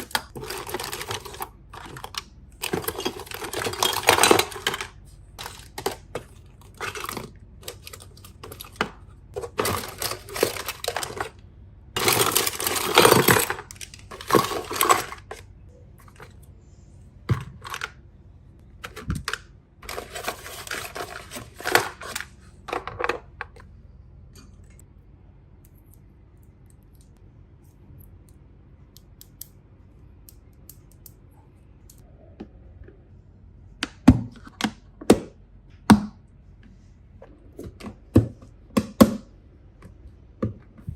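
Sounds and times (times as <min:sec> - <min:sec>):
plastic toy pieces clattering: 0:00.0 - 0:11.4, 0:12.0 - 0:15.4, 0:18.8 - 0:23.5.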